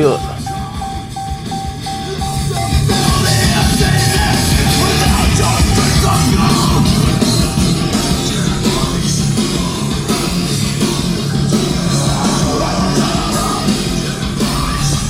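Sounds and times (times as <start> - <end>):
short beeps: 0.0 - 3.3
rock music through car speaker: 0.0 - 15.0.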